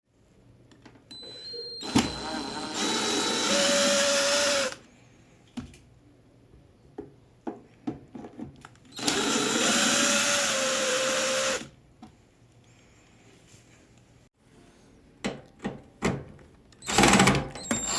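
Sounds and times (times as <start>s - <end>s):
power drill whining: 1.1s - 4.8s, 9.0s - 11.7s, 16.8s - 17.9s.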